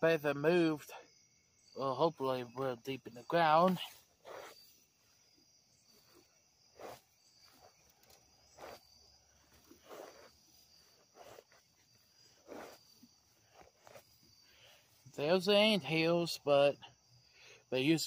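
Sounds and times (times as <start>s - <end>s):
crickets droning: 0.0s - 18.0s
slow footsteps crunching: 3.0s - 16.5s.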